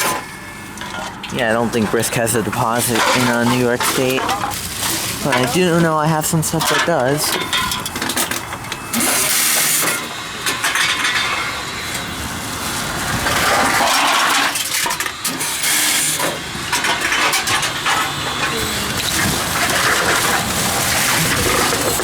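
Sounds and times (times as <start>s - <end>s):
cans clattering and being crushed: 0.0s - 11.5s
vending machine running: 0.0s - 22.0s.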